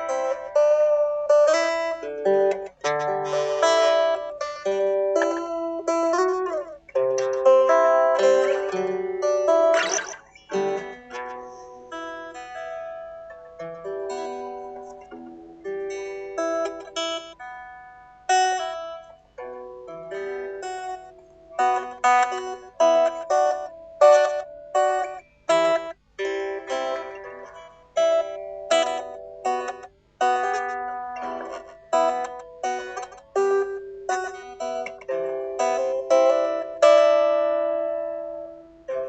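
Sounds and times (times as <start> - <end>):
solo guitar picking: 0.0 - 39.0.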